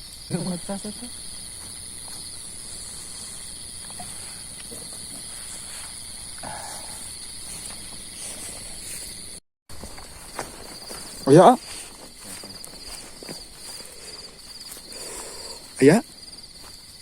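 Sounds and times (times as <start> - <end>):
crickets trilling: 0.0 - 17.0
high insect whine: 0.0 - 17.0.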